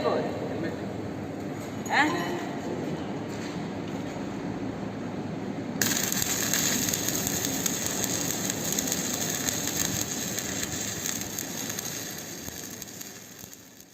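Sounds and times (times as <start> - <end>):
welding arc crackling and sizzling: 5.8 - 13.9.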